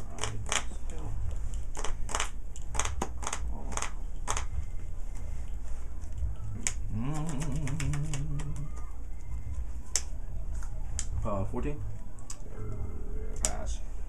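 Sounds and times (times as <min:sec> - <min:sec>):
low wavering hum: 0:00.0 - 0:14.0
playing cards clicking on table: 0:01.7 - 0:04.5.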